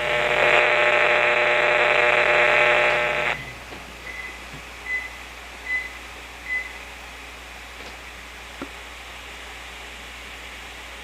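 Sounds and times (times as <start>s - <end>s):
radiation meter raspy buzz: 0.0s - 5.0s.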